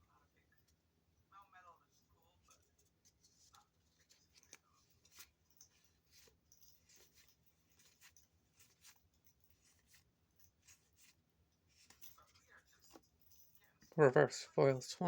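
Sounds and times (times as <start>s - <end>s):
trading cards rustling and clicking: 2.5s - 13.6s.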